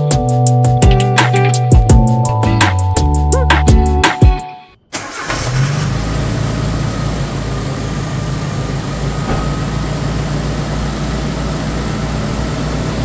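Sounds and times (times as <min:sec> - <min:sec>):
car engine idling: 0:04.8 - 0:13.0.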